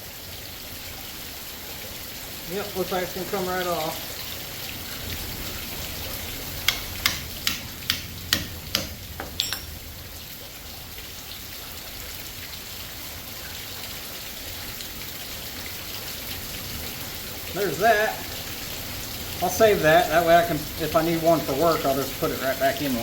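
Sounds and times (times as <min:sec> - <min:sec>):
heavy rain on surfaces: 0:00.0 - 0:23.0
sharp knocks: 0:06.6 - 0:09.7.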